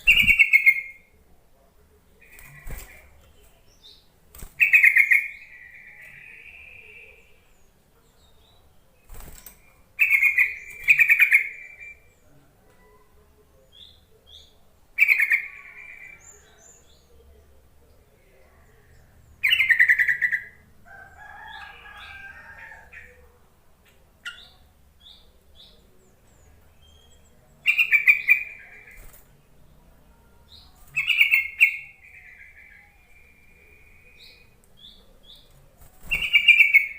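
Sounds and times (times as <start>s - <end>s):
bird chattering calls: 0.0s - 0.9s.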